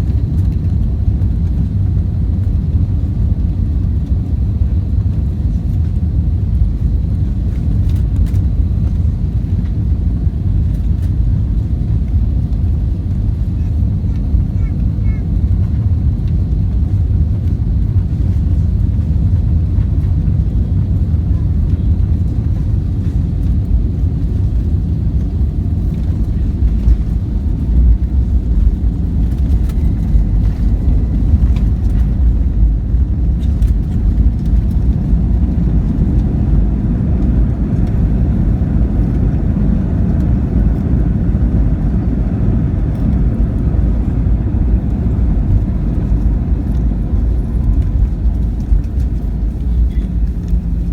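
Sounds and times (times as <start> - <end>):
jet engine rumble in cabin: 0.0 - 50.9
light clicks and rattles: 45.5 - 50.9.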